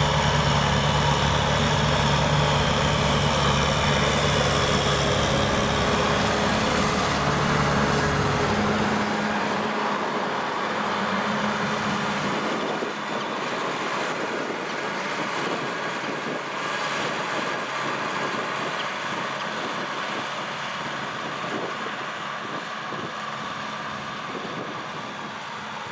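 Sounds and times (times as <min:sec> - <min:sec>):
tractor diesel engine running: 0:00.0 - 0:25.9.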